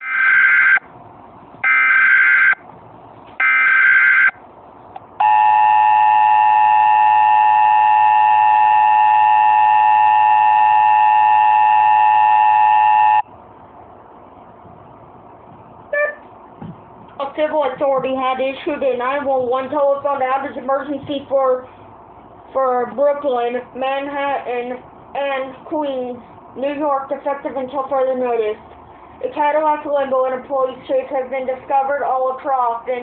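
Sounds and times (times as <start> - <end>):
harsh two-tone attention signal: 0.0 - 0.9, 1.6 - 2.6, 3.4 - 4.4, 5.2 - 13.3.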